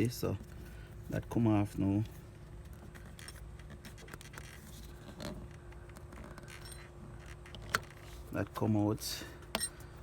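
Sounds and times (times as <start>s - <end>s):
steady low hum: 0.0s - 10.0s
rubber hose scraping and clicking: 2.1s - 8.4s.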